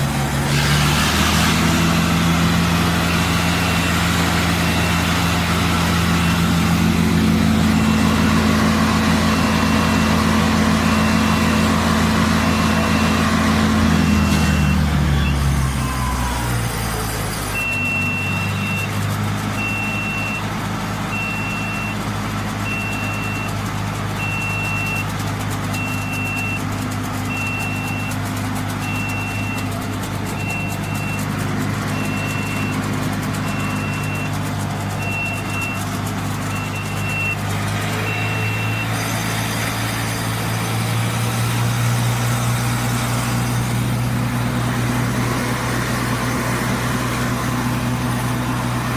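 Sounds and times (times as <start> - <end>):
wood chipper engine running: 0.0 - 48.9
high electronic beep: 3.0 - 10.1, 17.5 - 19.0, 32.0 - 32.8, 33.4 - 34.4, 35.0 - 37.4, 38.0 - 40.6.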